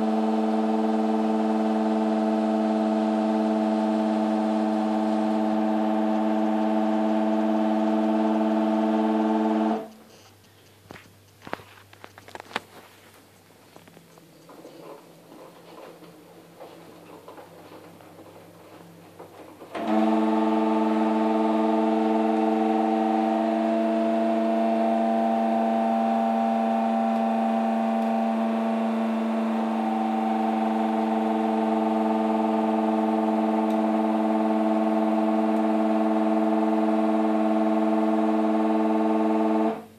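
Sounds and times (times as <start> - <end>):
washer dryer droning hum: 0.0 - 10.0, 14.0 - 39.9.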